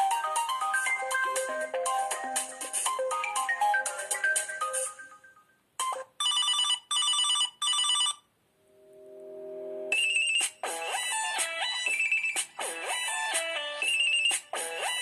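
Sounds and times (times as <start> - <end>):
phone ringtone melody: 0.0 - 8.3, 9.4 - 12.4
low electronic chord: 8.6 - 9.9.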